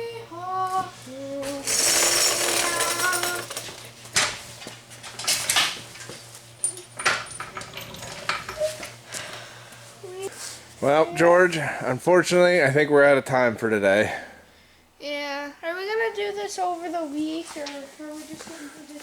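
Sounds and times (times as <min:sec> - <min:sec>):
metal tools clinking: 0:01.7 - 0:03.7, 0:05.2 - 0:09.0.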